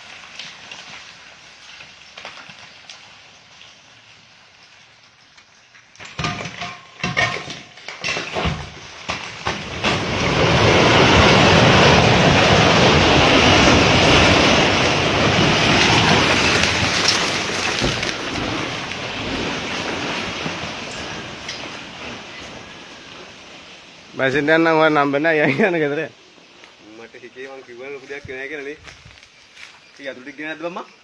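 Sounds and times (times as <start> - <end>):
heavy machinery clattering rumble: 6.0 - 23.7.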